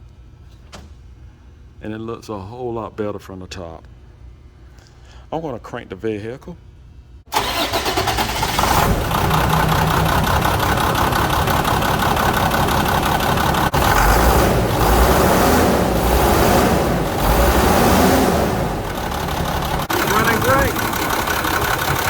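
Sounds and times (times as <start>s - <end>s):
diesel engine running: 7.3s - 22.0s.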